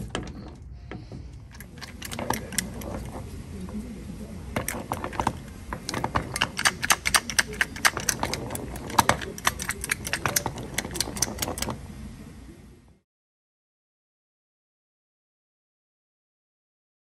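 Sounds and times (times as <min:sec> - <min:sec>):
rapid irregular clicks and knocks: 0:00.0 - 0:11.9.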